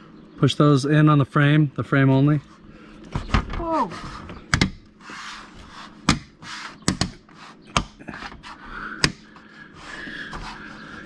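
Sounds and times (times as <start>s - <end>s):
sharp knocks and taps on window frame: 6.0s - 8.4s.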